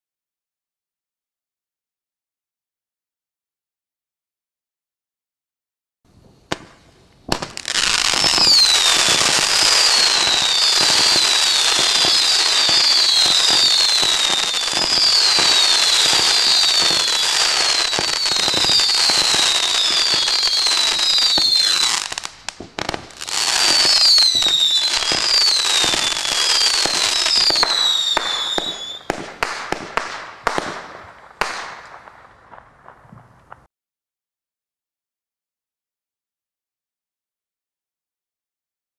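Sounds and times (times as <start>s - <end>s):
fireworks crackling and hissing: 6.1s - 33.7s
firework bangs: 6.5s - 33.7s
firework screams: 7.5s - 22.3s, 23.0s - 29.0s.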